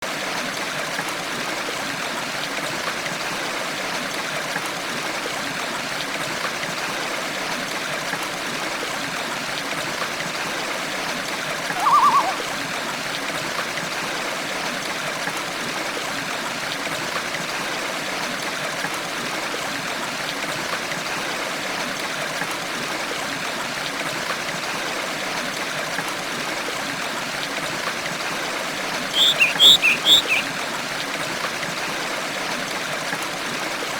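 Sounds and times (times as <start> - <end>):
stream running water: 0.0 - 33.9
trilled bird call: 11.7 - 12.5, 29.1 - 30.5.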